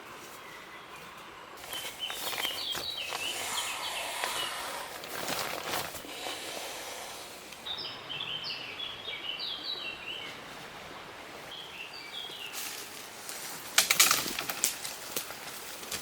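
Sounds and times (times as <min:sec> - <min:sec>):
small songbird chirping: 0:00.4 - 0:04.8, 0:07.5 - 0:10.4, 0:11.5 - 0:12.8
loud cracking and rustling: 0:01.6 - 0:07.6, 0:13.3 - 0:16.0.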